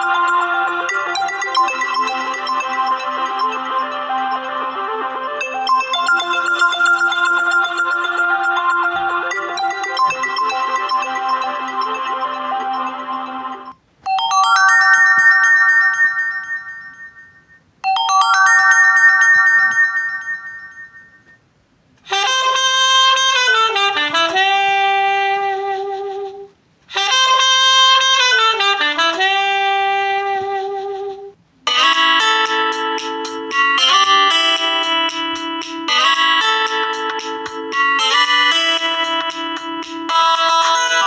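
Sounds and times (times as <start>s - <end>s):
melodic phone tone sliding downward: 0.0s - 13.7s
bright phone jingle: 0.0s - 21.4s.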